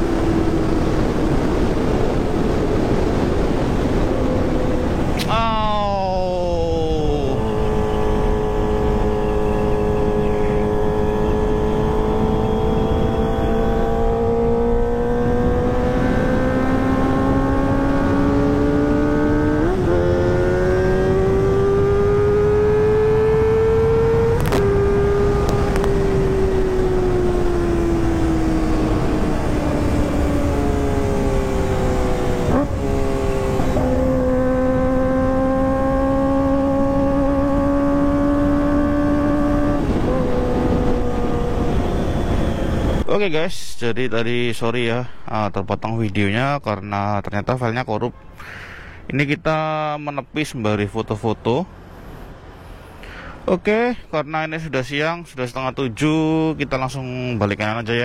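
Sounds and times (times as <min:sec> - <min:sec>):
motorcycle engine revving: 0:00.0 - 0:43.0.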